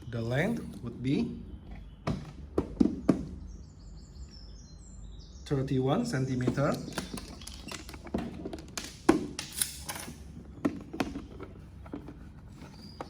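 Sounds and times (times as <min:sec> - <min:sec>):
toolbox taps and knocks: 0:02.0 - 0:03.4.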